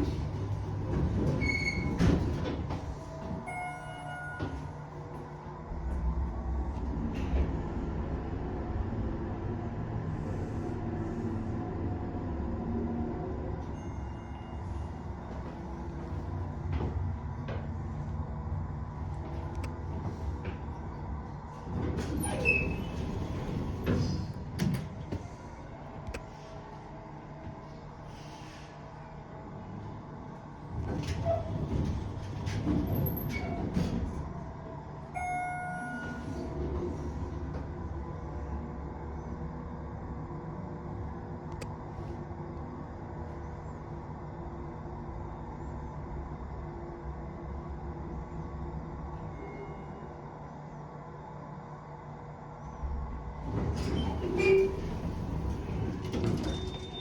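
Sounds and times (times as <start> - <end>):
elevator knocks and clunks: 0.0 - 4.8, 30.7 - 34.4, 53.4 - 57.0
elevator car rumble and hum: 0.0 - 57.0.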